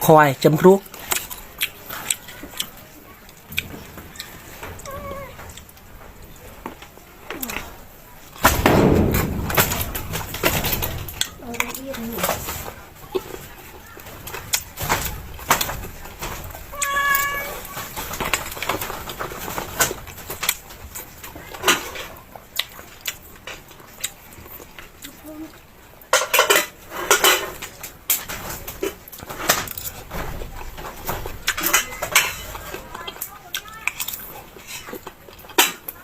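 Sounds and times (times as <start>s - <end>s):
chewing: 0.8s - 8.4s, 11.1s - 26.0s, 28.8s - 36.0s
utensils clicking against dishes: 30.8s - 36.0s.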